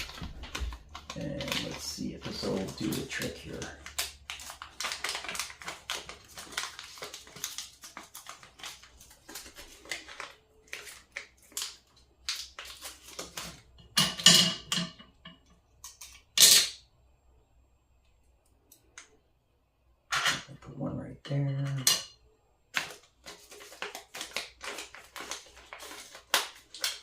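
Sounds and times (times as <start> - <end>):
plastic kit clattering: 0.0 - 11.8.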